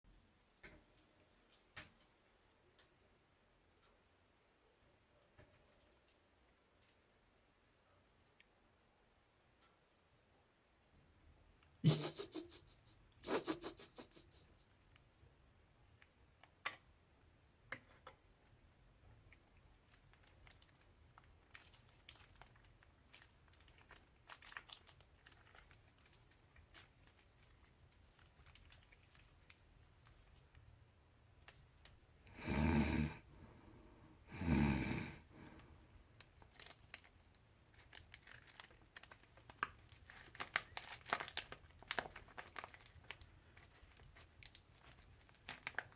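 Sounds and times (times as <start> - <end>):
plastic bags crinkling: 19.7 - 30.6, 36.2 - 45.9.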